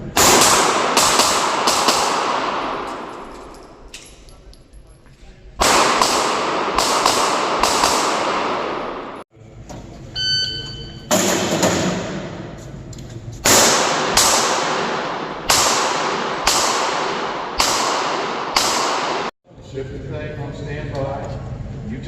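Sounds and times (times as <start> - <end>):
handgun shots echoing: 0.2 - 4.2, 5.6 - 9.2, 13.5 - 19.3
short ringing tone: 10.1 - 11.1.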